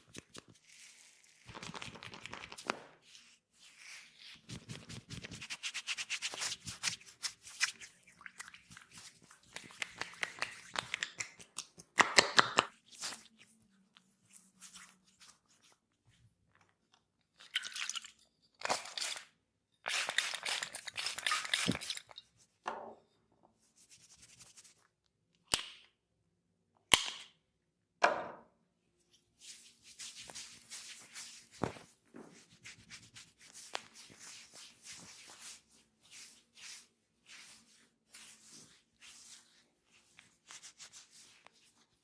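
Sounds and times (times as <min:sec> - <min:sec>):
hands rubbing and slapping skin: 0:00.0 - 0:16.7, 0:23.6 - 0:26.0, 0:29.1 - 0:42.0.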